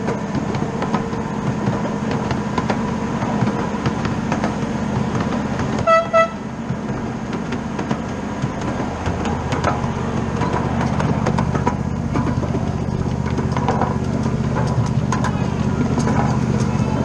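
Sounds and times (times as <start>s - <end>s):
miniature train rumbling and clicking: 0.0s - 17.0s
train whistle toots: 5.8s - 6.4s.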